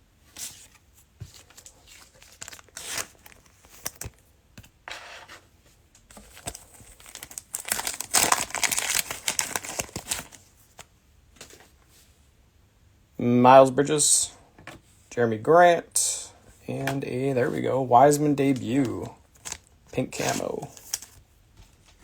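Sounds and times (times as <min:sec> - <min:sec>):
cellophane wrapper crinkling: 0:01.4 - 0:04.2, 0:06.2 - 0:10.8, 0:18.4 - 0:21.2
cellophane tearing: 0:01.9 - 0:04.2, 0:06.3 - 0:10.4, 0:18.5 - 0:21.2.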